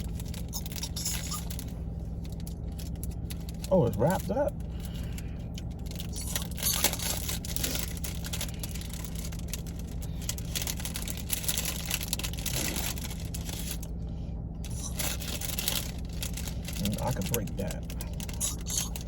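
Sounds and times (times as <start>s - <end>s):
plastic wrapper crinkling and tearing: 0.0s - 14.0s, 14.6s - 19.0s
steady low hum: 0.0s - 19.0s.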